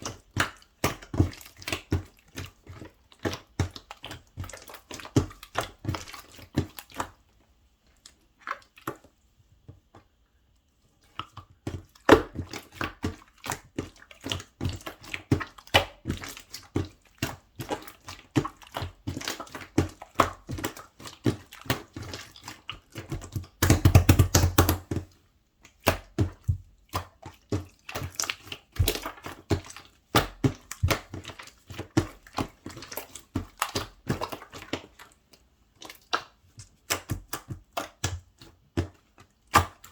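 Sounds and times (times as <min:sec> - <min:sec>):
slime squished by hand: 0:11.1 - 0:35.2.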